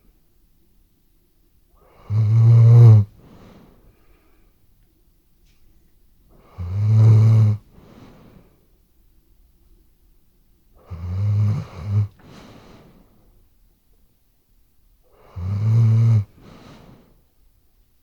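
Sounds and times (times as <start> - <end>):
dog snoring: 1.8 - 3.6, 6.3 - 8.2, 10.8 - 12.7, 15.1 - 17.1
soft breath out: 3.1 - 4.7, 7.6 - 8.8, 11.6 - 13.4, 16.3 - 17.3.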